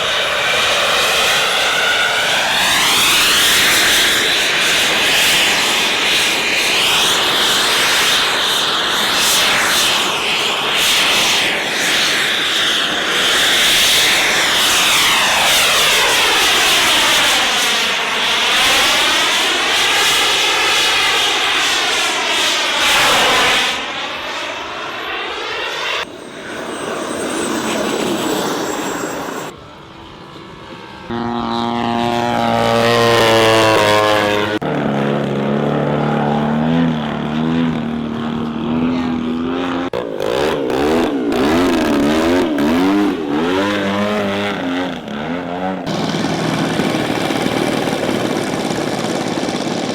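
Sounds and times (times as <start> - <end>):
model aircraft engines flying past: 0.0 - 49.9
engine revving: 30.9 - 49.9.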